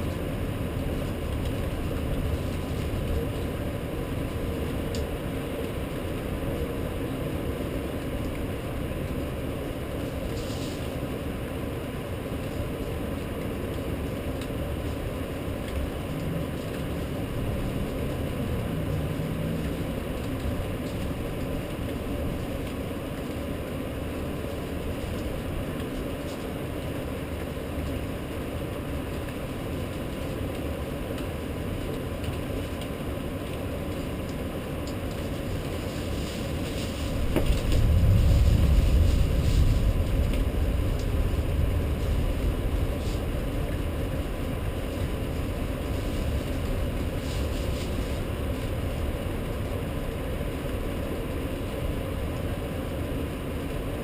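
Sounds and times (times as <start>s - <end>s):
low background rumble: 0.0s - 54.0s
thunder rumbling: 35.2s - 49.7s.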